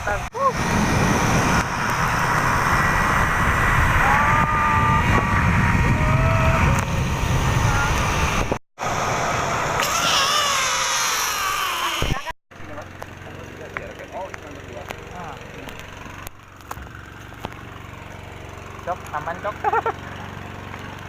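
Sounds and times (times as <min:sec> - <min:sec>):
rushing wind: 0:00.0 - 0:11.0
zip line rolling noise: 0:00.5 - 0:12.3
person yelling: 0:04.0 - 0:05.2.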